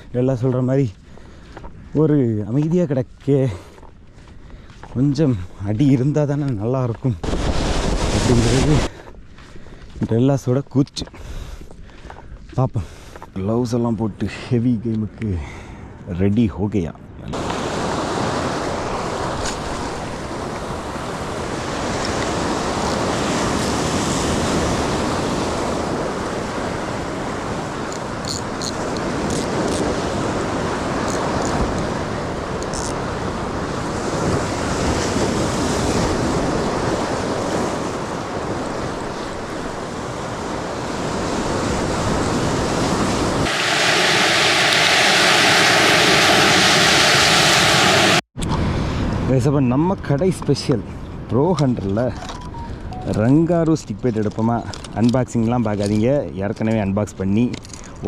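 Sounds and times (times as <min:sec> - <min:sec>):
sea waves washing on shore: 0:07.2 - 0:08.9, 0:17.3 - 0:48.3
wind on microphone: 0:17.2 - 0:49.4
steady hum: 0:43.4 - 0:48.2.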